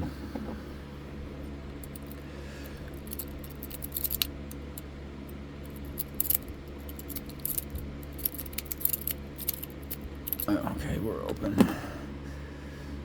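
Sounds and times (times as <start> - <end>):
steady low hum: 0.0 - 13.0
lock pick scraping and clicking: 1.8 - 4.9, 5.6 - 10.5.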